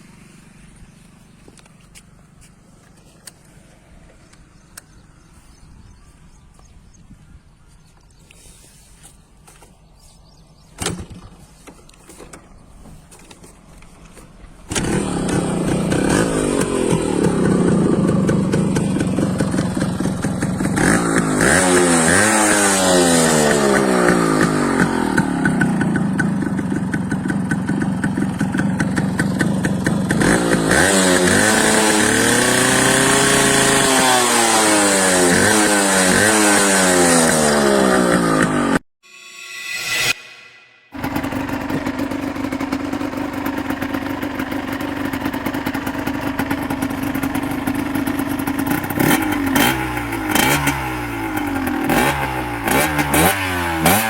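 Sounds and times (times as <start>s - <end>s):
two-stroke motorcycle engine revving: 14.6s - 38.8s, 41.0s - 54.0s.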